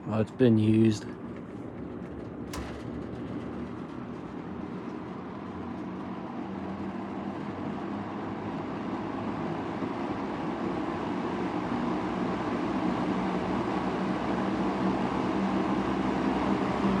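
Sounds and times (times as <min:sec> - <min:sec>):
box fan whirring and rattling: 0:00.0 - 0:17.0
sharp click: 0:02.5 - 0:03.8.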